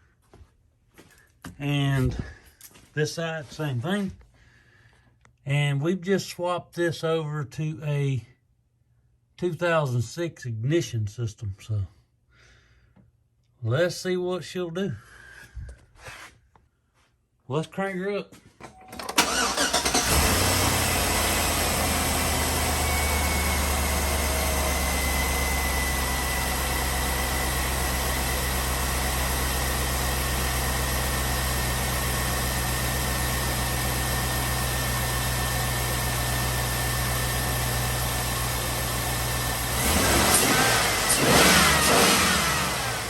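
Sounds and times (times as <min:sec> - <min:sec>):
car engine idling and revving: 0:19.1 - 0:43.0.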